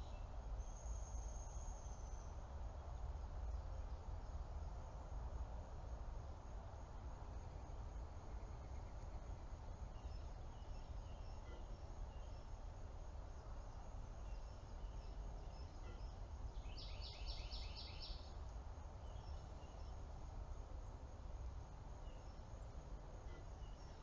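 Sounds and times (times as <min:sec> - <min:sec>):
bird chirps: 0:08.4 - 0:12.7, 0:13.4 - 0:20.0.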